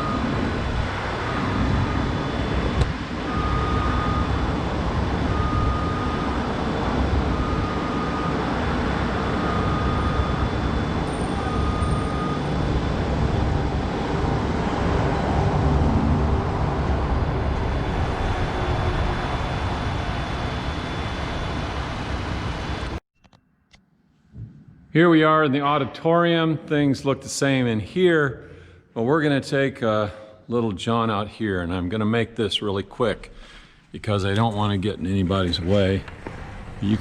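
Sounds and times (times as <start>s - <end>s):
backup alarm beeping: 0.0s - 14.0s
heavy diesel machinery running: 0.0s - 23.0s, 34.0s - 37.0s.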